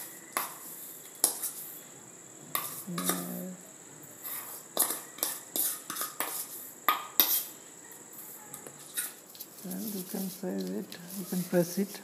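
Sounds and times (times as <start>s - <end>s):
spoon clinking and scraping a dish: 2.5s - 3.3s, 4.2s - 7.5s.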